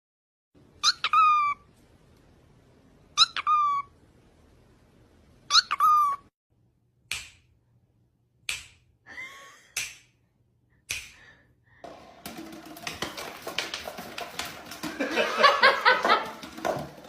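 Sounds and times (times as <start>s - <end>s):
small animal squeaky call: 0.8s - 1.6s, 3.2s - 3.9s, 5.5s - 6.3s.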